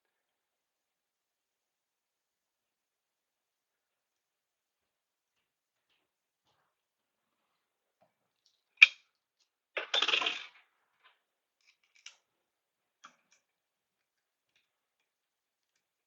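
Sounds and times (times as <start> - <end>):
sharp click of small parts: 11.6 - 12.2.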